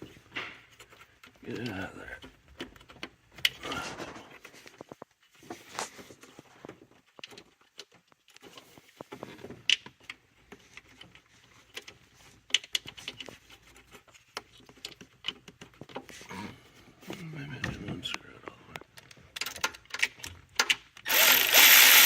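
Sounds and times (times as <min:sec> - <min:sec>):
clicks and rattles of plastic part: 0:06.7 - 0:16.2, 0:18.7 - 0:21.1.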